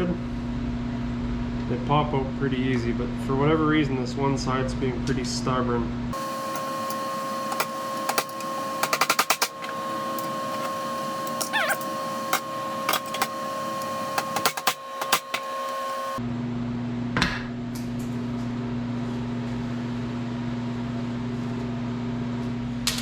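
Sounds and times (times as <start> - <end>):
steady electrical hum: 6.1 - 16.2
brief squeak: 11.4 - 11.9.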